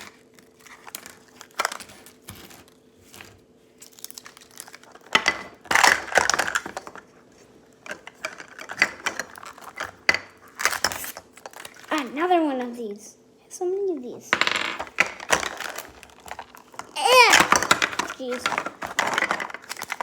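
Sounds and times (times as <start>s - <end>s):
plastic wrapping crinkling: 0.0s - 7.1s, 8.3s - 12.0s, 15.1s - 20.0s.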